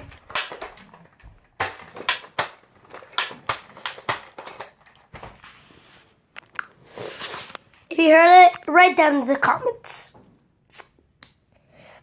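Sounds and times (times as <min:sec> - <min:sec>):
sharp plastic clicks and snaps: 0:00.0 - 0:04.9.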